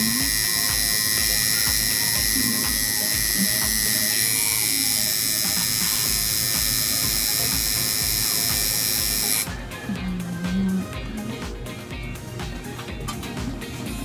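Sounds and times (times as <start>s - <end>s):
background music with a beat: 0.0s - 4.1s, 5.2s - 14.0s
tattoo machine buzzing: 0.0s - 9.6s.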